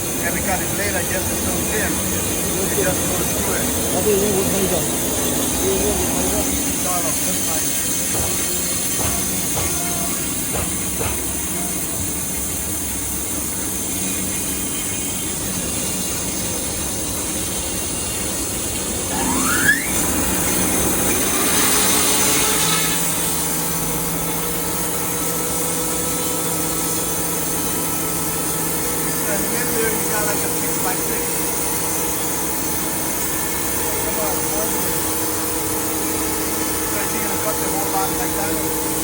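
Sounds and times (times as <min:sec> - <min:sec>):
saw blade cutting timber: 0:00.0 - 0:15.2, 0:19.0 - 0:39.0
saw squealing: 0:00.1 - 0:16.6, 0:19.1 - 0:24.2.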